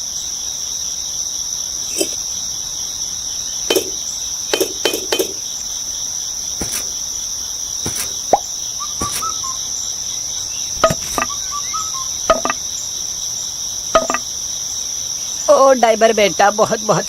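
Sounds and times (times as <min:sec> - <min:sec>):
crickets chirring: 0:00.0 - 0:17.0
sharp taps: 0:03.7 - 0:05.4, 0:06.6 - 0:07.0, 0:07.9 - 0:08.4, 0:09.0 - 0:09.4, 0:14.0 - 0:14.2.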